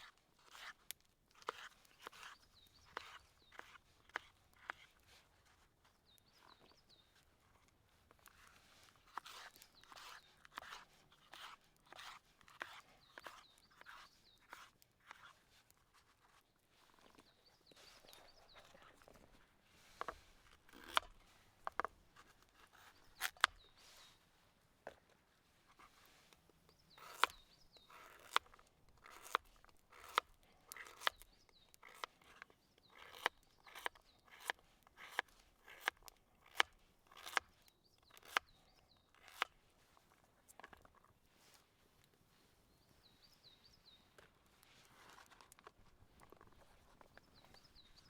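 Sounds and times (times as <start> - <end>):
knife cutting food on board: 27.0 - 31.2, 31.8 - 37.4, 38.1 - 38.4.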